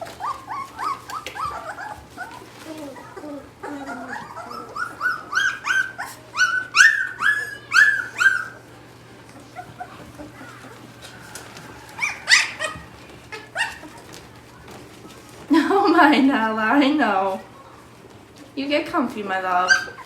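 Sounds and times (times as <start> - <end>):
puppy crying: 0.0 - 14.8, 19.6 - 20.0.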